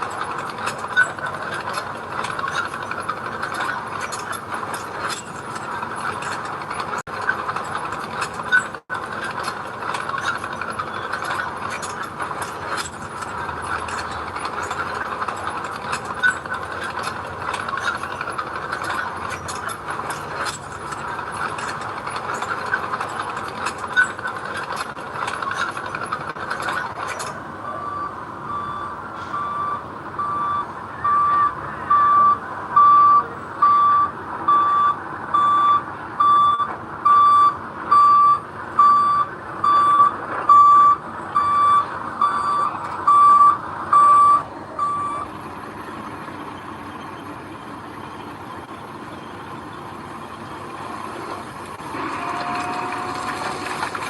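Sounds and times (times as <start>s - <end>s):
earthmoving machinery clattering: 0.0s - 35.8s
reversing alarm beeping: 27.2s - 45.3s.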